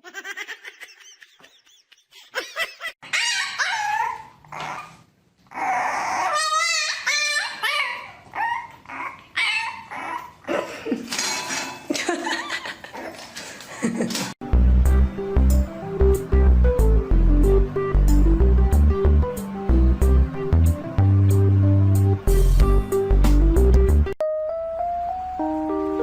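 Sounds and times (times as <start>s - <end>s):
dog whining and yipping: 3.0s - 10.5s.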